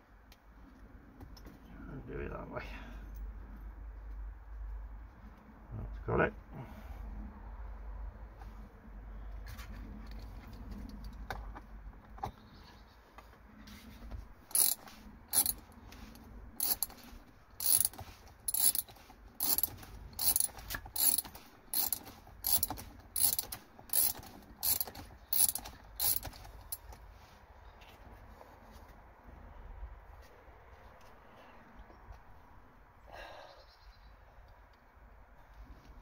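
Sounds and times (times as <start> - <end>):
ratchet spanner ratcheting: 14.4 - 27.0.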